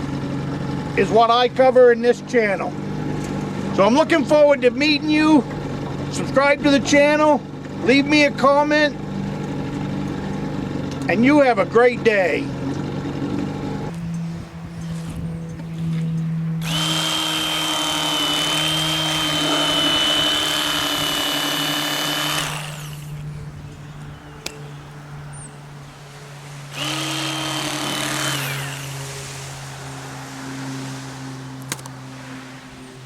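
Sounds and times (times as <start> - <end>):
electric fillet knife whine: 13.9 - 23.3, 26.7 - 29.5.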